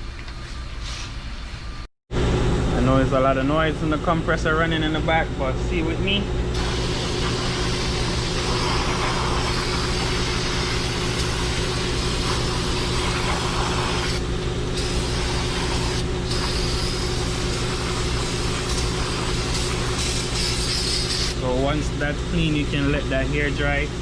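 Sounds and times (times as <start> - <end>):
air compressor running: 2.1 - 24.0
aerosol spray hissing: 6.6 - 14.2, 14.8 - 21.4.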